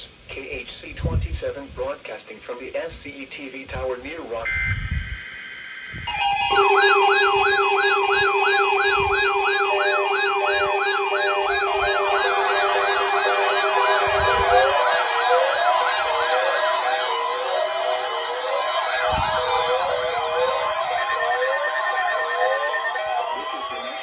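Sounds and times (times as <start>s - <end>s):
electronic siren wails: 4.4s - 24.0s
steady alarm tones: 4.4s - 24.0s.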